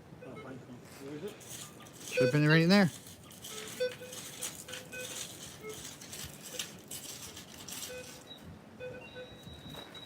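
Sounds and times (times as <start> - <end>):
metal detector beeps: 0.2 - 0.6, 1.5 - 10.0
soil being scraped by hand: 1.3 - 8.3.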